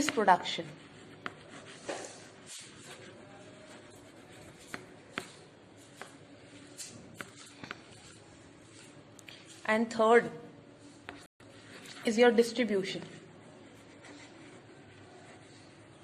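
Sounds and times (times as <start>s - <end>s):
pen scratching and tapping: 0.0s - 2.7s, 3.7s - 8.2s.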